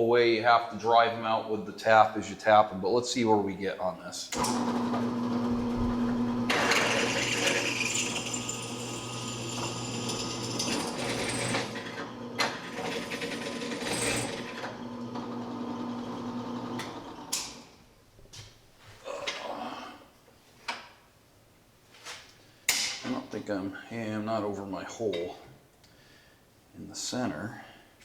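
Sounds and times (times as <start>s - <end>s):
drill cutting metal: 4.4s - 15.2s
drill press motor hum: 4.4s - 17.4s.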